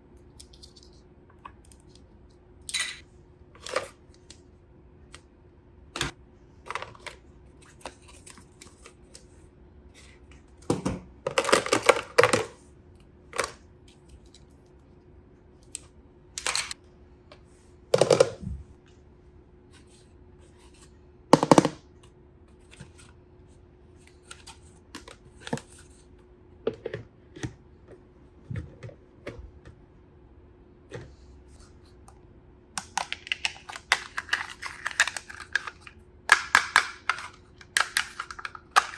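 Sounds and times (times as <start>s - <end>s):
faint steady hum: 0.0s - 38.9s
packaging crinkling: 33.1s - 35.9s.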